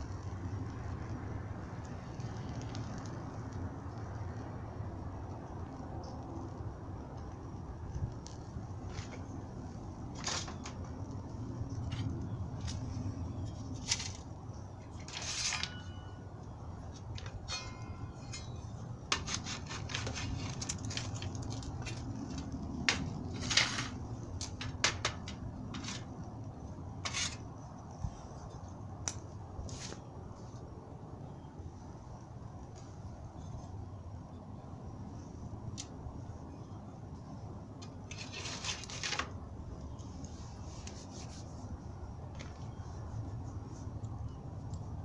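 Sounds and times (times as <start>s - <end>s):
wood fire crackling and popping: 0.0s - 30.5s
low steady fire rumble: 0.0s - 45.0s.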